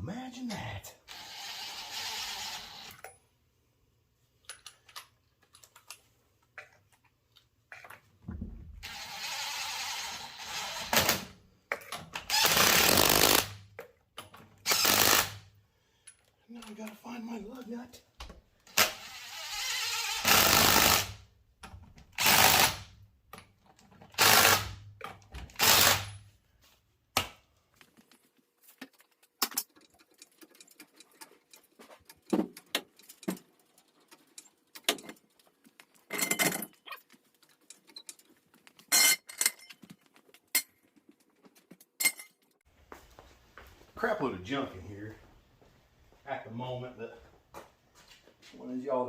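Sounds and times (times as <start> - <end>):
pneumatic impact wrench bursts: 1.1 - 3.0, 8.8 - 11.3, 12.3 - 13.6, 14.6 - 15.5, 18.7 - 21.2, 22.2 - 22.9, 24.2 - 24.8, 25.5 - 26.2
metallic clicks of tools handled: 4.4 - 6.0, 28.9 - 42.6.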